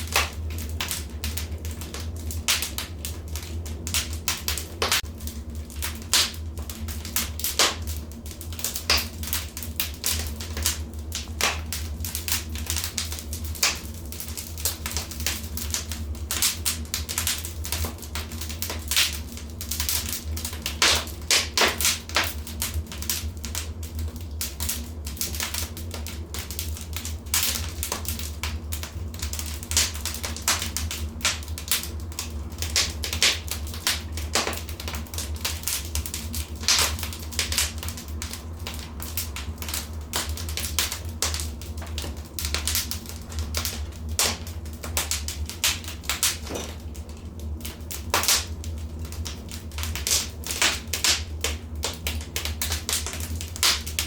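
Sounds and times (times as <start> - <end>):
wood fire crackling: 0.0 - 54.0.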